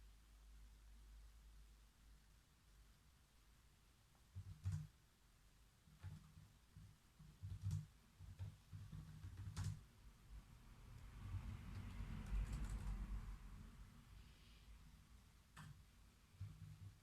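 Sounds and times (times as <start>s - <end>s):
keyboard keystrokes: 4.4s - 4.9s, 5.9s - 9.8s, 11.7s - 13.0s.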